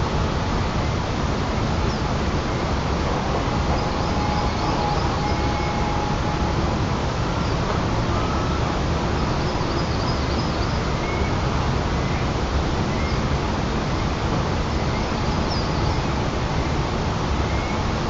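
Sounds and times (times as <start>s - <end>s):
faint high bird calls: 1.8s - 6.7s.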